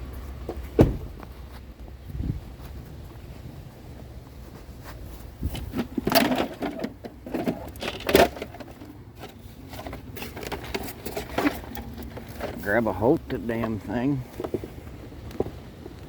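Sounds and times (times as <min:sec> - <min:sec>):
scooter clattering and scraping: 0:05.1 - 0:16.0.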